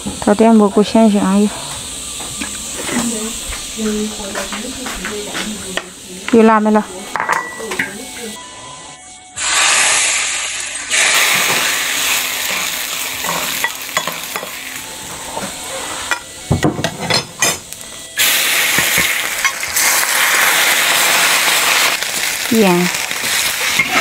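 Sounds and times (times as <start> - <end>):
food sizzling in a wok: 0.0 - 24.0
spatula knocking and scraping wok: 12.5 - 17.7.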